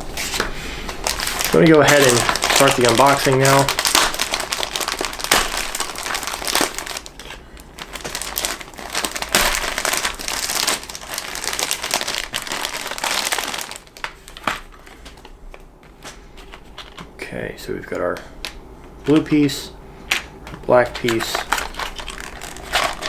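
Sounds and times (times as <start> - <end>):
plastic packaging crinkling: 0.1 - 17.1, 20.7 - 23.0.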